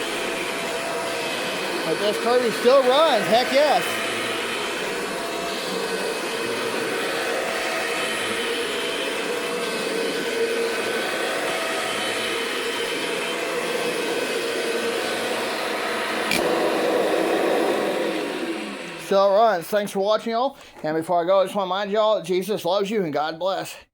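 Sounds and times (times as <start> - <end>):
vacuum cleaner running: 0.0 - 20.2
sharp click: 16.3 - 16.5.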